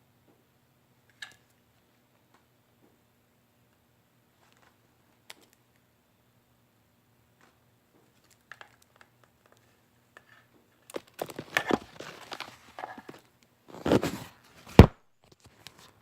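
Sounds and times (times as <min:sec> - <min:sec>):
rustling and clattering: 0:09.5 - 0:16.0.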